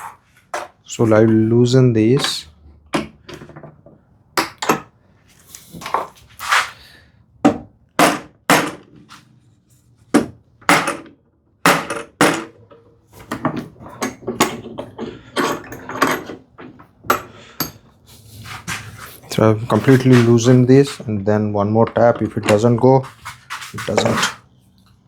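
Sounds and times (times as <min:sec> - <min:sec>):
bar clamps clanking: 0:12.2 - 0:17.8.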